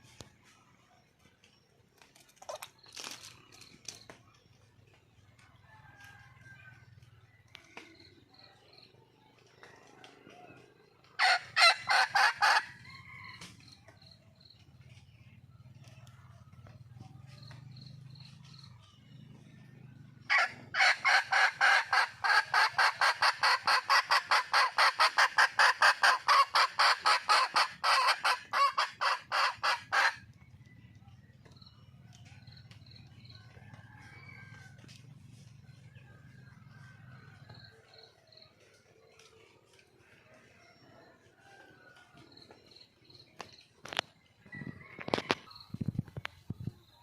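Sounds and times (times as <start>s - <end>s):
hen clucking: 11.1s - 12.8s, 20.3s - 30.3s.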